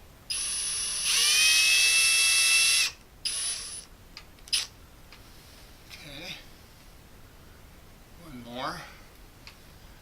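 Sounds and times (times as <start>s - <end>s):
electric drill-driver whining: 0.3s - 3.9s, 4.5s - 4.7s.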